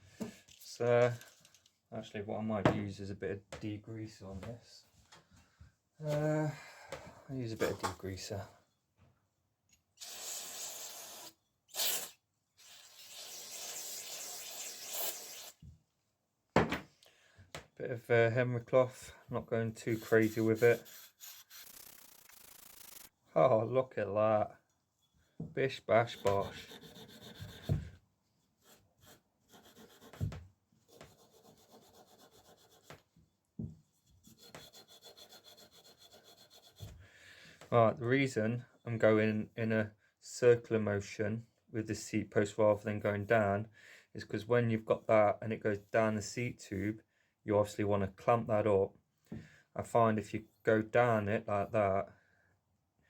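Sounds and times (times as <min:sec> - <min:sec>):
spray can hissing: 0:10.0 - 0:15.5, 0:19.9 - 0:23.1
cloth scrubbing metal: 0:19.8 - 0:23.1.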